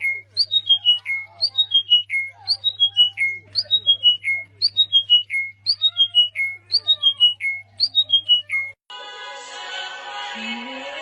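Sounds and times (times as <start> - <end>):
bird whistling call: 0.0 - 8.8.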